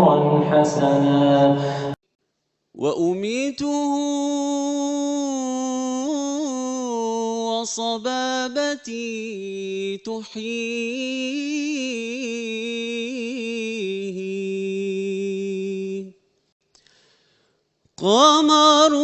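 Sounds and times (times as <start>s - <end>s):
man singing devotional chant: 2.8s - 16.1s, 18.0s - 19.0s.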